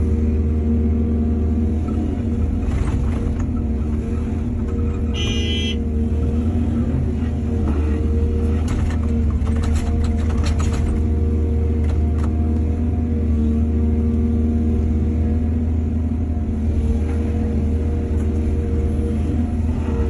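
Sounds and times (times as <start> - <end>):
excavator diesel engine running: 0.0 - 20.0
brief high-pitched tone: 5.2 - 5.8
machine clanks and knocks: 8.6 - 11.1.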